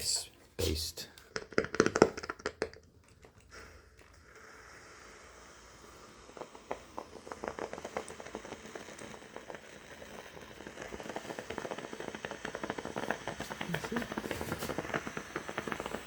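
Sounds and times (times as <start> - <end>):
water sizzling into steam: 3.5 - 16.0.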